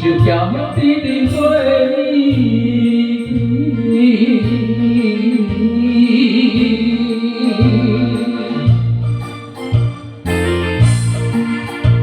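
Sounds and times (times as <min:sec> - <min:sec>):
bass notes pulsing: 0:00.0 - 0:12.0
keyboard: 0:00.0 - 0:12.0
wavering melody line: 0:04.8 - 0:12.0.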